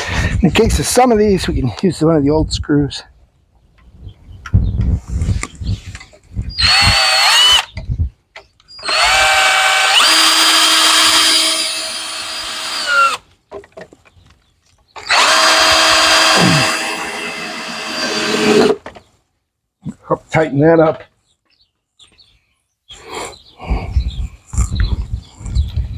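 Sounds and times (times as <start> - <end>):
cordless drill driving screws: 6.6 - 7.7, 8.8 - 13.2, 15.0 - 18.8.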